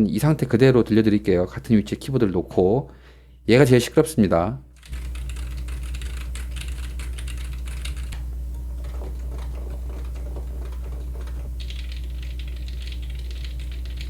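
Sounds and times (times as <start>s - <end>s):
steady low hum: 0.0s - 14.0s
mechanical keyboard typing: 4.8s - 14.0s.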